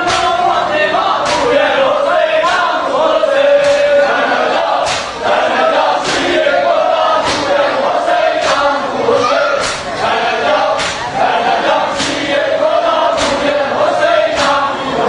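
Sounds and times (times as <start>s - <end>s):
men chanting in unison: 0.0s - 15.0s
sharp beat: 1.1s - 1.7s, 3.5s - 8.8s, 9.6s - 14.7s.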